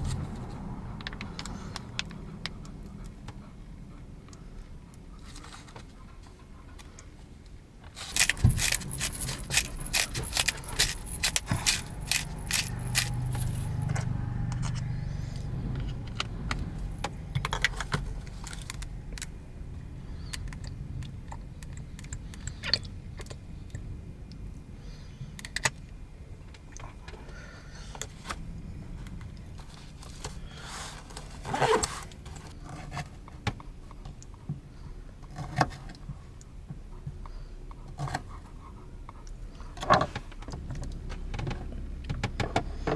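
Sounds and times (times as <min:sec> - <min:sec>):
small metal pieces jingling: 0:08.0 - 0:13.9.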